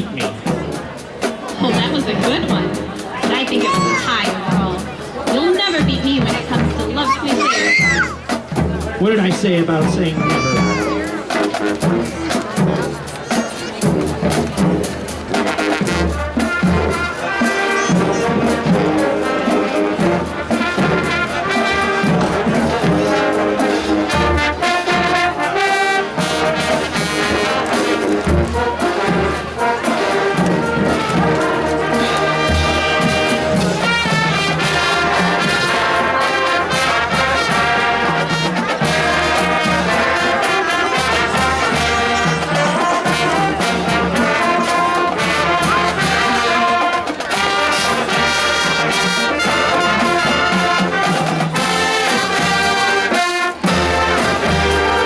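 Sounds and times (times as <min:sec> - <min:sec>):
marching band playing: 0:00.0 - 0:55.0
marching drum beat: 0:00.0 - 0:55.0
trumpets and trombones: 0:00.0 - 0:55.0.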